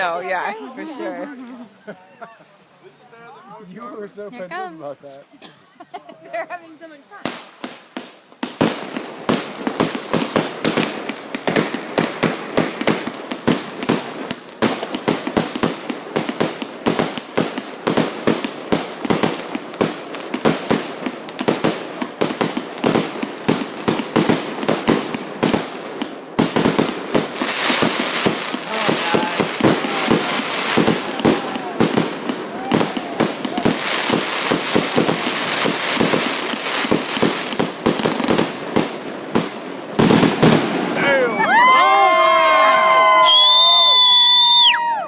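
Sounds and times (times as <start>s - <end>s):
fireworks crackling hiss: 0.0s - 41.6s
fireworks bangs and pops: 6.8s - 41.1s.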